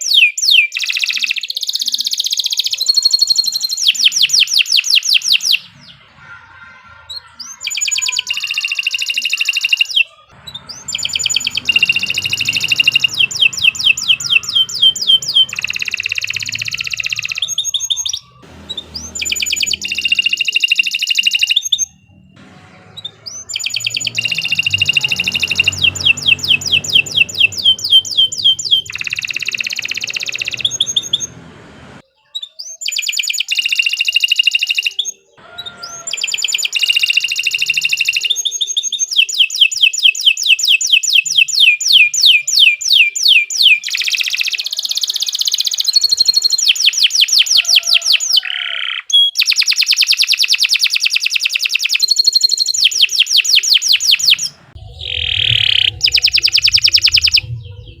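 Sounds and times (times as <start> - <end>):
canary singing rapid trills: 0.0 - 31.5, 32.2 - 58.0.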